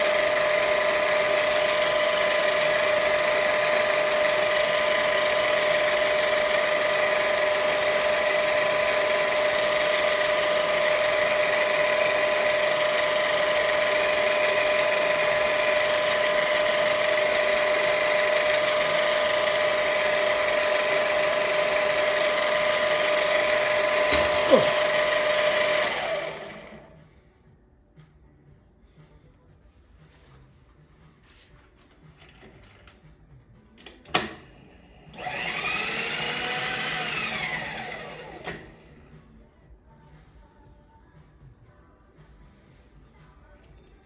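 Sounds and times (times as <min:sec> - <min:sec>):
milling machine motor whine: 0:00.0 - 0:27.0, 0:35.1 - 0:38.9.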